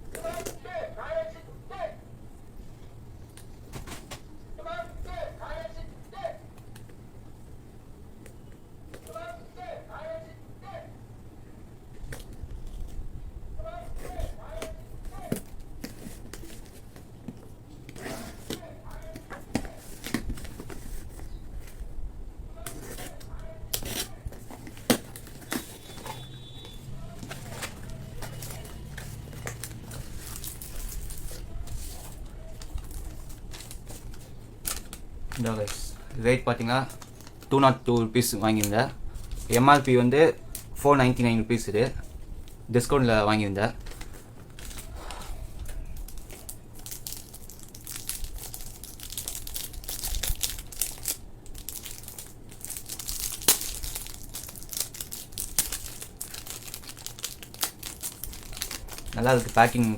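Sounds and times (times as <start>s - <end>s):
packaging crinkling and tearing: 22.6s - 40.8s, 43.8s - 59.9s.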